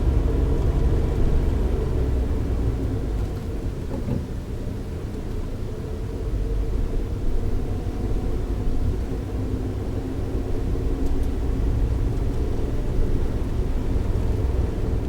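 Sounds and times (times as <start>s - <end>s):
engine and road noise rumble: 0.0s - 15.0s.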